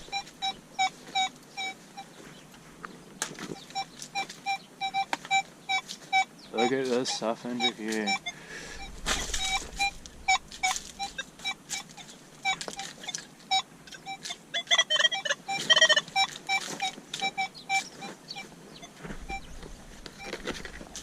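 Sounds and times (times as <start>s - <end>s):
metal detector beeps: 0.0s - 2.2s, 3.5s - 21.0s
metal detector wavering tones: 0.0s - 2.2s, 3.6s - 21.0s
digging scraping and knocking: 8.8s - 13.0s.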